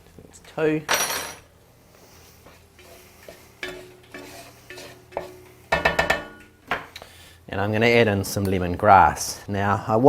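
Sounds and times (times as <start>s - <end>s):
spoon scraping a frying pan: 2.4s - 7.0s
spoon clattering: 2.8s - 6.9s.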